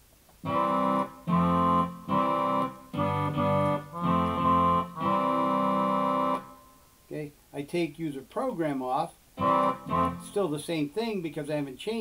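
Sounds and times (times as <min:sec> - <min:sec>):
bass notes: 0:00.4 - 0:06.7, 0:09.4 - 0:10.7
digital accordion chords: 0:00.4 - 0:06.8, 0:09.4 - 0:10.7.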